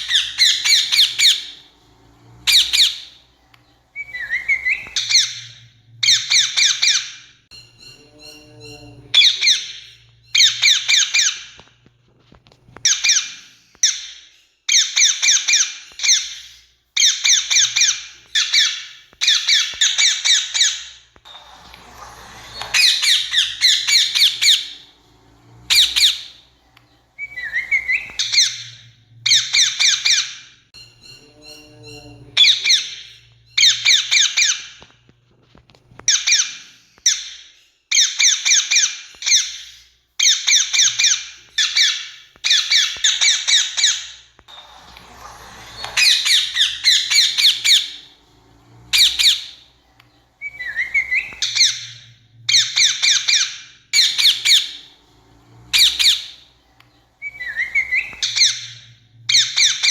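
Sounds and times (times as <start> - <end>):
parakeets screeching: 0.0 - 11.6, 12.7 - 34.9, 36.0 - 59.9
lower pulsing bird call: 27.2 - 32.9, 57.2 - 59.9.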